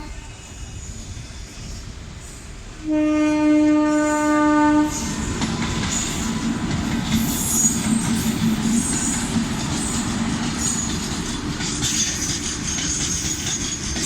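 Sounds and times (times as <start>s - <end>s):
train rumbling past: 0.0s - 14.0s
train horn blast: 2.8s - 5.4s.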